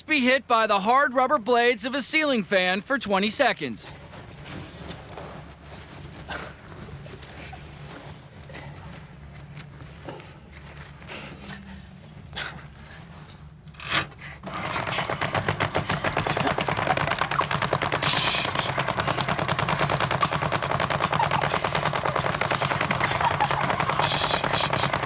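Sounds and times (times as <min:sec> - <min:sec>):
fan blades slapping against person: 0:14.4 - 0:25.0.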